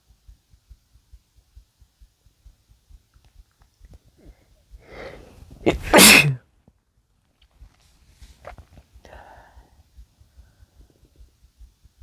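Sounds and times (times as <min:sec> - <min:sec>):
drawn-in breath: 0:04.8 - 0:05.4, 0:09.0 - 0:09.8
man sneezing: 0:05.6 - 0:06.4.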